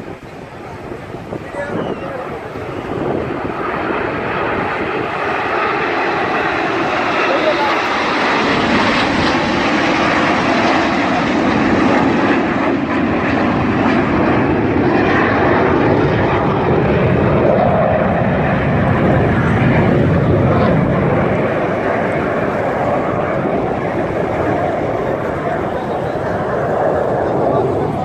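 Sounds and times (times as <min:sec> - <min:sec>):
aircraft flying over: 0:00.0 - 0:28.0.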